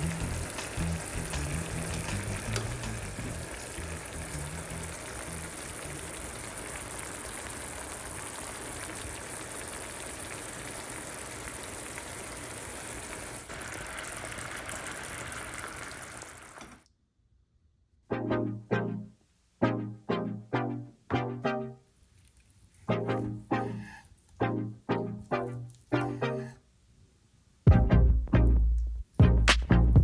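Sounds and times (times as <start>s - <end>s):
food sizzling in frying pan: 0.0s - 16.8s.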